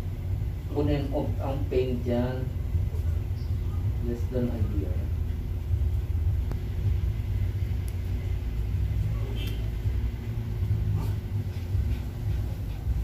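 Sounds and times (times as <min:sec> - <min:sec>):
faint hum: 0:00.0 - 0:13.0
steady low rumble: 0:00.0 - 0:13.0.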